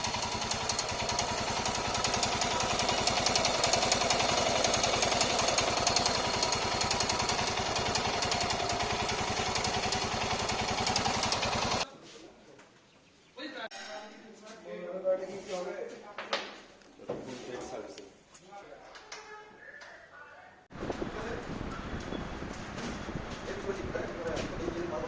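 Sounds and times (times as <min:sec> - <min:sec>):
fast metallic ticking: 0:00.0 - 0:11.8
motorcycle engine idling: 0:00.0 - 0:11.8.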